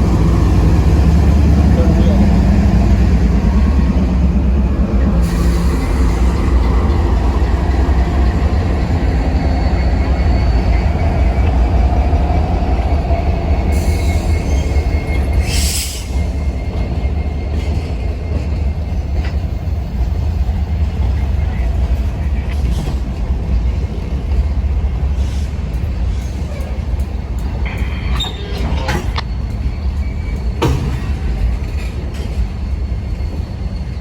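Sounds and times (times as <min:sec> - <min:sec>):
diesel locomotive rumble: 0:00.0 - 0:34.0
train cars rolling: 0:00.0 - 0:34.0
faint high wheel squeal: 0:05.2 - 0:22.2, 0:26.1 - 0:34.0.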